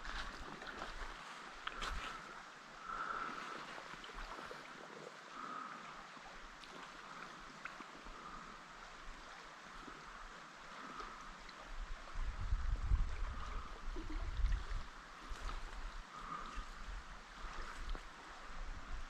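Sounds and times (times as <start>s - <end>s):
creek water running: 0.0s - 19.0s.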